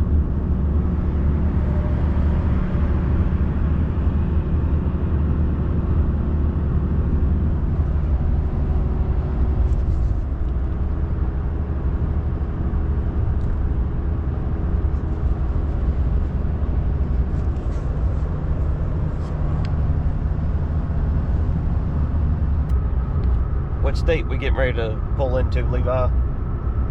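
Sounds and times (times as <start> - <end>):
truck engine and tyre rumble: 0.0 - 26.9.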